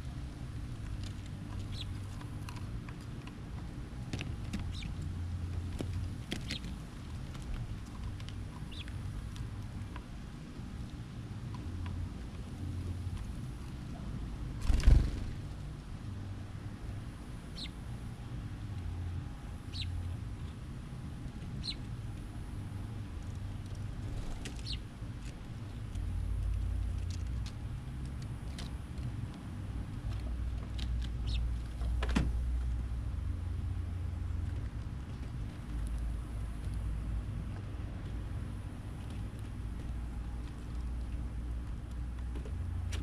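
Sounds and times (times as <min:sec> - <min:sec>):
steady low hum: 0:00.0 - 0:43.0
small birds chirping: 0:01.5 - 0:02.3, 0:04.5 - 0:05.1, 0:06.2 - 0:06.8, 0:07.8 - 0:09.4, 0:17.5 - 0:17.8, 0:19.6 - 0:20.6, 0:21.5 - 0:22.0, 0:24.0 - 0:24.9, 0:31.1 - 0:31.6
bird chirping: 0:01.7 - 0:02.0, 0:04.7 - 0:04.9, 0:08.7 - 0:08.9, 0:17.5 - 0:17.8, 0:19.7 - 0:20.0, 0:21.6 - 0:21.8, 0:24.6 - 0:24.8, 0:31.2 - 0:31.4.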